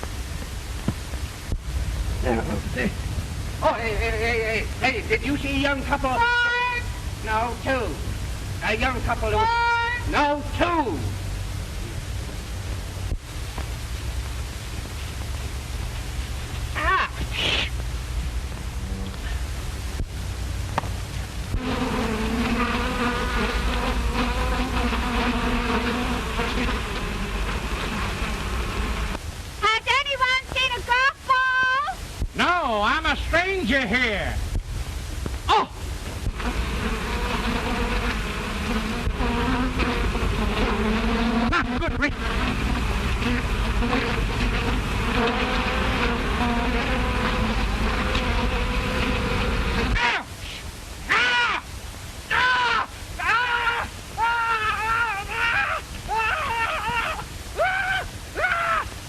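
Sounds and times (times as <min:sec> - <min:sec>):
soundtrack hum and hiss: 0:00.0 - 0:59.0
bees buzzing: 0:20.8 - 0:29.2, 0:36.2 - 0:50.0.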